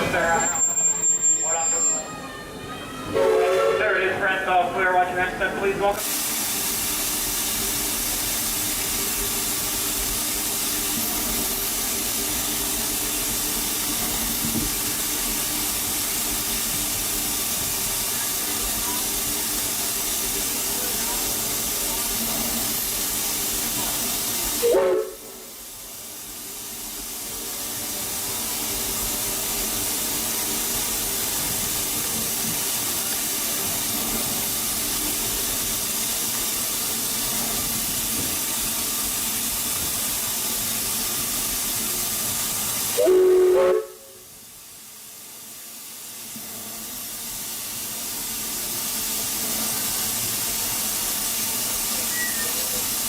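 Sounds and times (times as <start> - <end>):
steam locomotive hissing: 0.0 - 53.0
steam whistle toots: 3.1 - 4.0, 24.6 - 25.6, 42.9 - 44.3, 52.0 - 52.8.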